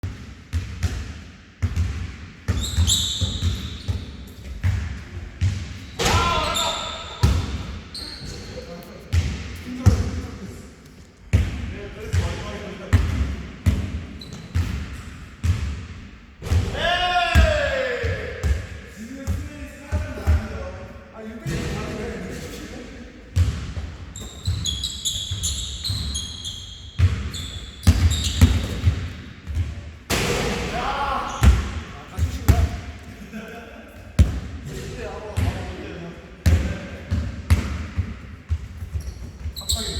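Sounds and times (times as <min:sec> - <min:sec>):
basketball bouncing on gym floor: 0:00.0 - 0:06.6, 0:11.3 - 0:20.5, 0:23.4 - 0:30.6, 0:34.2 - 0:34.6, 0:36.4 - 0:39.9
sneaker squeal: 0:02.5 - 0:04.8, 0:05.8 - 0:08.7, 0:14.1 - 0:14.7, 0:24.1 - 0:29.1, 0:38.8 - 0:39.9.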